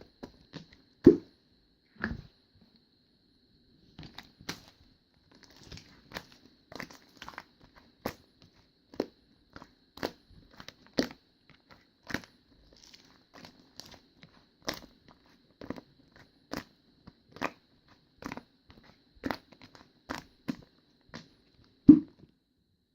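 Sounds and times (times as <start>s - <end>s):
slime popping and crackling: 5.4s - 8.2s.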